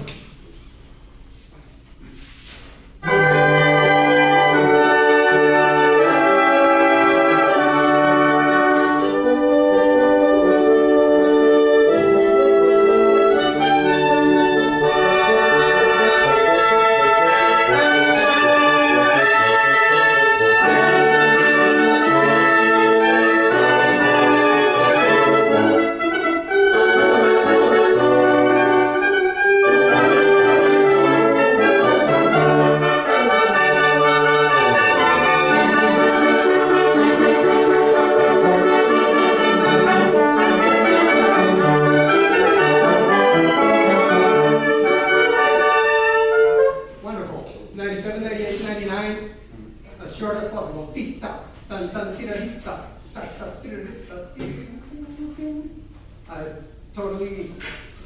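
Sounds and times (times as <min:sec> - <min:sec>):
woodwinds and brass playing chords: 0:03.0 - 0:47.1.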